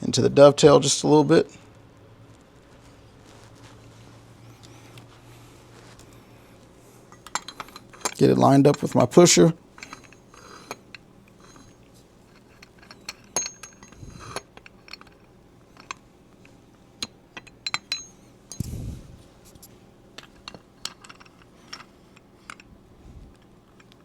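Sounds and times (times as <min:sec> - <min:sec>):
light metallic clicks and clinks: 0:07.1 - 0:09.2, 0:09.8 - 0:18.9.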